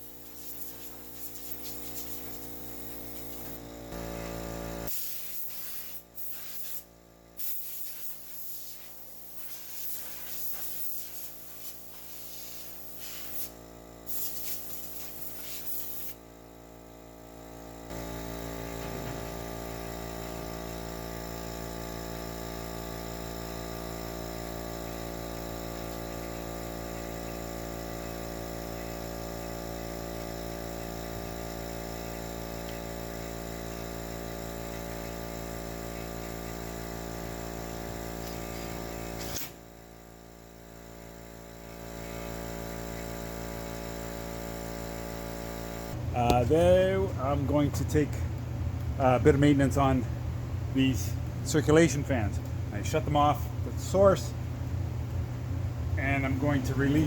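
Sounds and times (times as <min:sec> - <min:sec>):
steady machine hum: 0:00.0 - 0:04.9, 0:16.1 - 0:57.0
compressed air hissing bursts: 0:00.0 - 0:16.2, 0:37.8 - 0:39.7.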